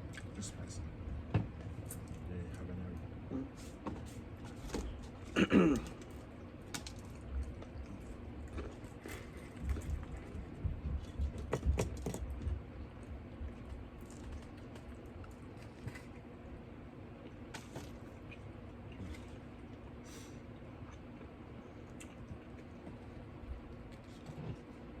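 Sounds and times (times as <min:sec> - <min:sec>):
eating noises: 0:17.2 - 0:25.0.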